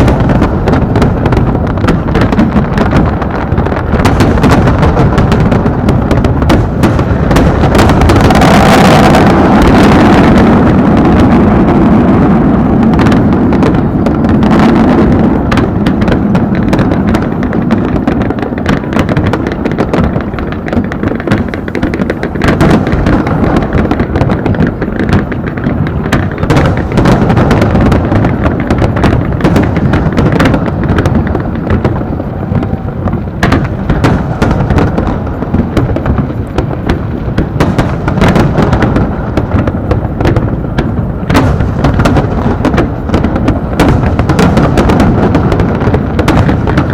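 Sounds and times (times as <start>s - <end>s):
fireworks booming and crackling: 0.0s - 46.9s.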